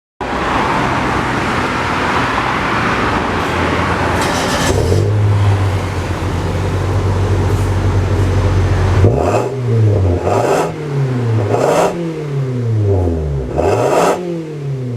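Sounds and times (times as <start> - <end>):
car engine idling: 4.1 - 13.6.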